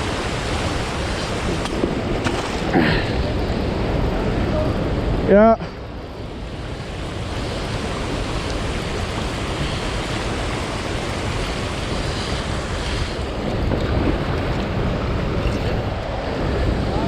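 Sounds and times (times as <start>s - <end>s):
waterfall and river rushing: 0.0s - 5.2s, 5.9s - 15.4s.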